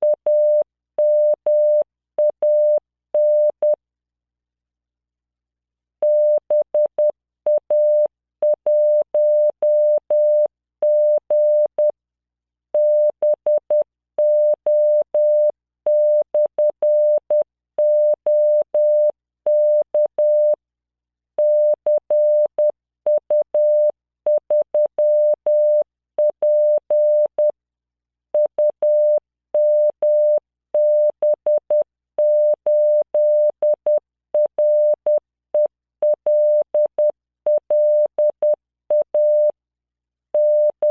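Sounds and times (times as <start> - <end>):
morse code tone beeps: 0.0 - 3.8, 12.8 - 20.6, 21.4 - 27.5, 28.4 - 39.5, 40.4 - 40.9.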